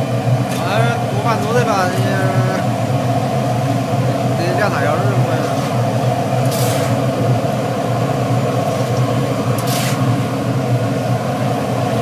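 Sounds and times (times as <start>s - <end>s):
furnace machine drone: 0.0s - 12.0s.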